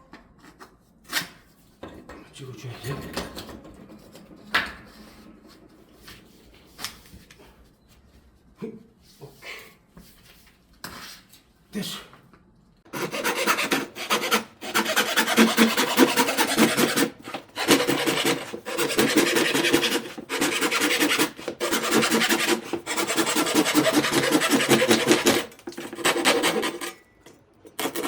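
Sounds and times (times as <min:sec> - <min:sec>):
hand tool rasping on wood floor: 0:12.9 - 0:27.0, 0:27.7 - 0:28.0.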